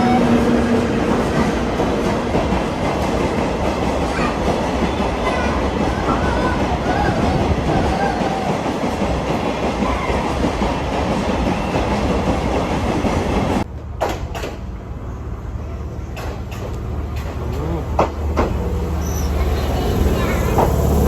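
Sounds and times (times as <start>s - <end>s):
train wheels rumbling on rail: 0.0s - 21.0s.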